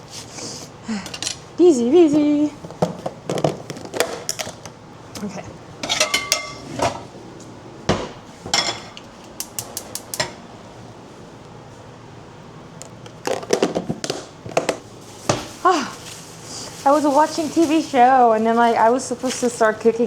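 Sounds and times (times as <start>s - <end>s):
dishes and utensils clattering: 5.8s - 7.0s, 8.0s - 9.0s.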